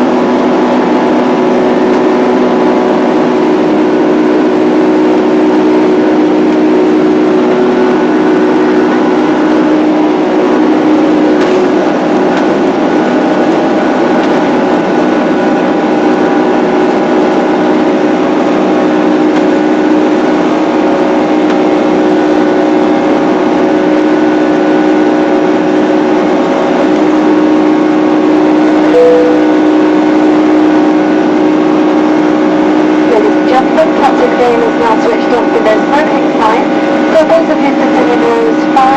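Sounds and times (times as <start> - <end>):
jet engines rushing at takeoff: 0.0 - 38.9
steady engine hums: 0.0 - 38.9.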